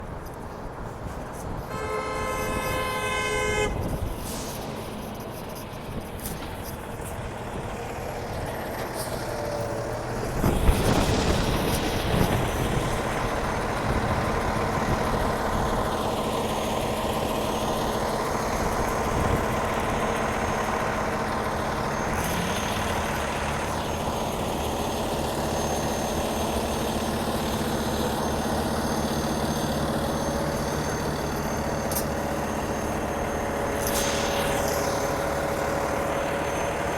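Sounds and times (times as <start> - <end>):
heavy truck engine running: 0.0 - 36.9
road traffic noise: 0.0 - 36.9
car horn honk: 1.7 - 4.0.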